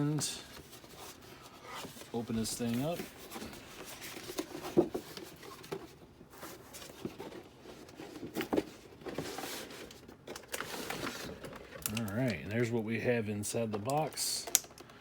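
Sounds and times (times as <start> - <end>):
cardboard box rustling and scraping: 0.6 - 11.6.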